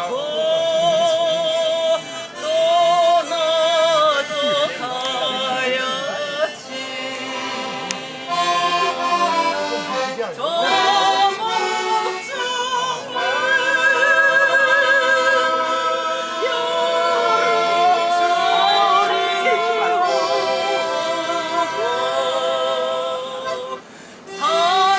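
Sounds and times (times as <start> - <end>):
backing music: 0.0 - 24.9
person singing: 0.0 - 24.9.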